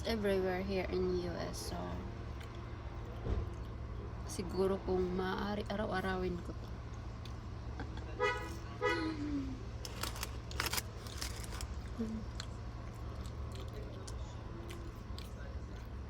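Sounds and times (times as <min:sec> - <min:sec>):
crunching fried food: 0:09.8 - 0:16.0.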